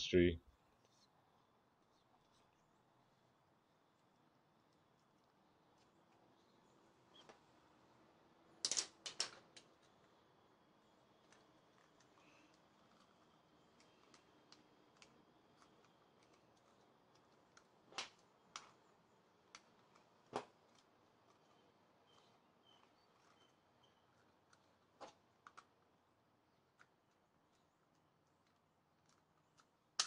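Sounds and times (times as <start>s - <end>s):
plastic toy parts clicking: 8.6s - 9.9s, 11.2s - 18.8s, 24.1s - 25.8s, 26.6s - 30.0s.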